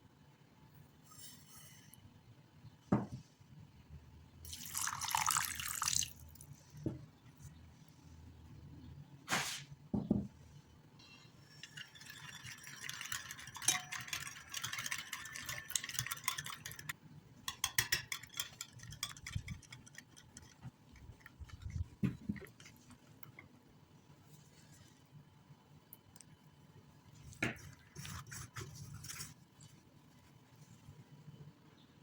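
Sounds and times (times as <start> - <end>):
utensil clinking against bowl: 11.0 - 22.9.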